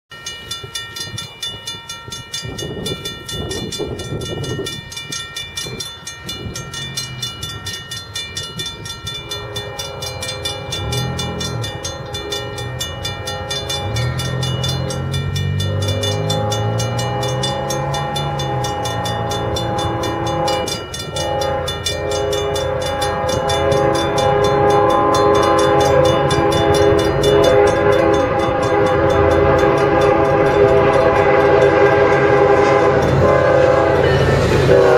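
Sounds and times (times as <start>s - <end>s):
diesel locomotive rumble: 0.7s - 34.9s
train air horn: 9.3s - 12.4s, 15.6s - 34.9s.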